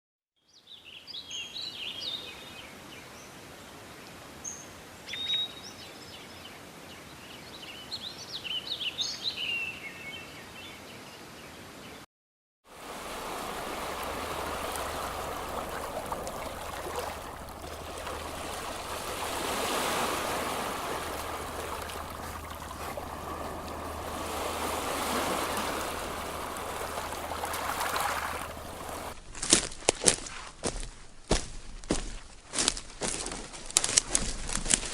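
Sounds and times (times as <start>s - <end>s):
flowing water rushing: 12.7s - 29.2s.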